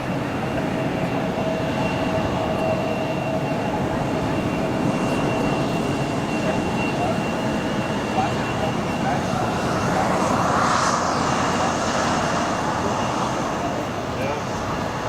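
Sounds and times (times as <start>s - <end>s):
aircraft engines whining: 0.0s - 15.0s
broad rushing noise: 3.8s - 15.0s.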